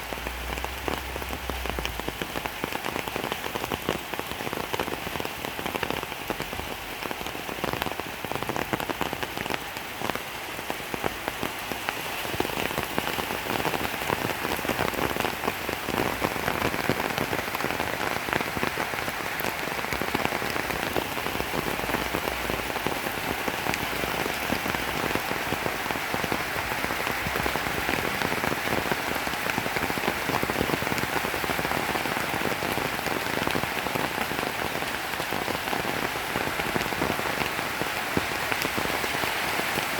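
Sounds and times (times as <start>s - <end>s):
rain falling on a surface: 0.0s - 39.9s.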